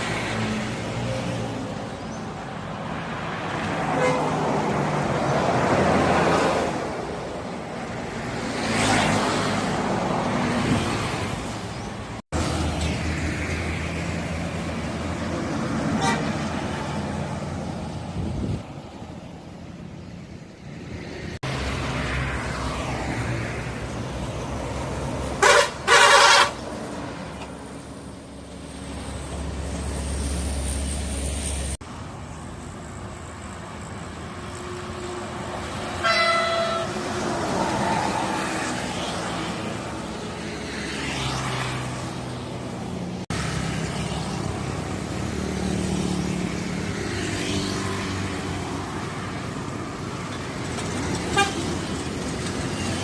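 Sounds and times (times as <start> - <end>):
bus horn blasts: 3.9 - 4.5, 15.9 - 16.5, 25.4 - 26.7, 35.9 - 37.2, 51.3 - 51.8
bus engine rumble: 9.5 - 21.6.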